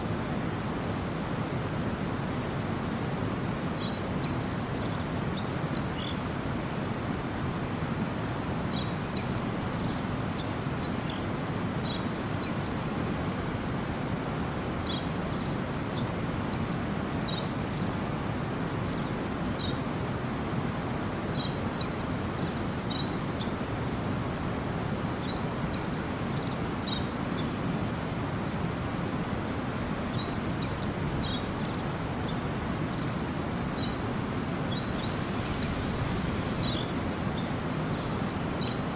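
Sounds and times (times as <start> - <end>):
stream babbling: 22.6 - 38.9
small birds chirping: 30.1 - 34.0, 34.7 - 38.9.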